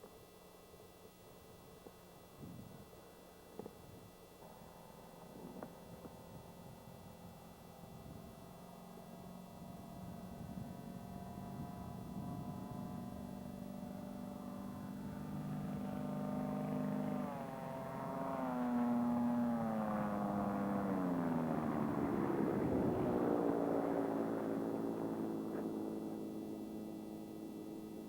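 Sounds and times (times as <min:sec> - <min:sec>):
propeller aircraft passing by: 0:04.4 - 0:28.0.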